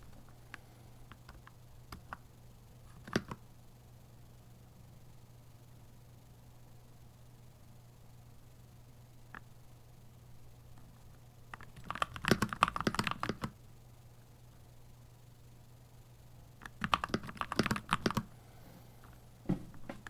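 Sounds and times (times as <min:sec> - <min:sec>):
mechanical keyboard typing: 0:01.1 - 0:02.2, 0:02.9 - 0:03.4, 0:11.5 - 0:13.6, 0:16.6 - 0:18.3.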